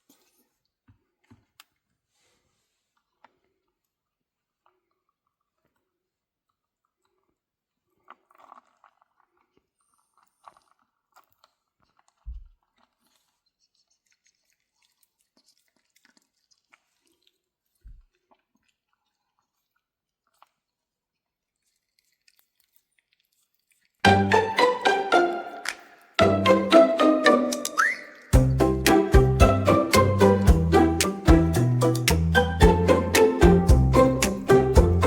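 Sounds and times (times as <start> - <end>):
crunchy chewing of food: 8.0 - 23.9.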